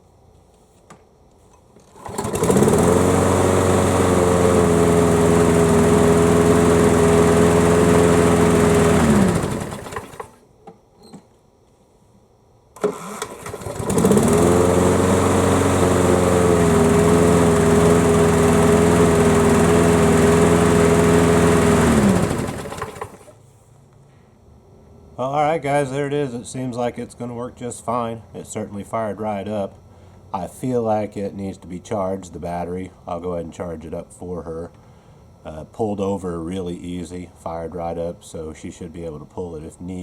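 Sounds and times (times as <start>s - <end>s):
mower engine starting: 1.8s - 10.4s, 12.8s - 23.4s
mower engine winding down: 1.8s - 10.4s, 12.8s - 23.4s
mower engine running: 2.0s - 10.4s, 12.8s - 23.4s.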